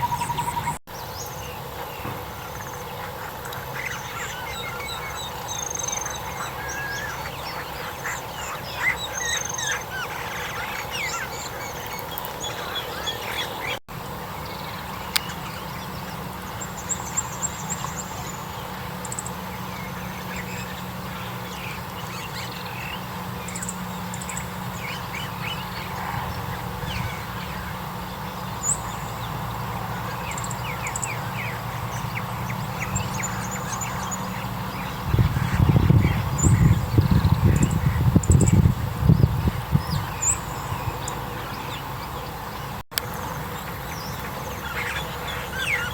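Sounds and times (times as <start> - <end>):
small birds chirping and trilling: 0.0 - 45.9
steady low hum: 0.0 - 45.9
ducks quacking: 2.4 - 11.8.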